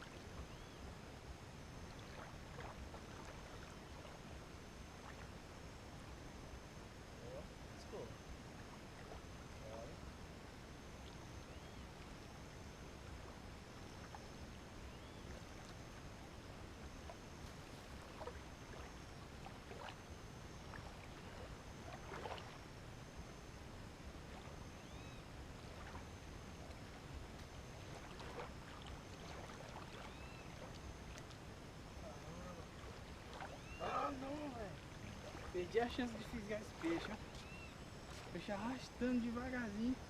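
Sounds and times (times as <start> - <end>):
faint chirps: 0.0 - 0.9, 10.9 - 12.8, 13.8 - 16.3, 24.3 - 27.0, 29.2 - 31.3, 31.9 - 40.0.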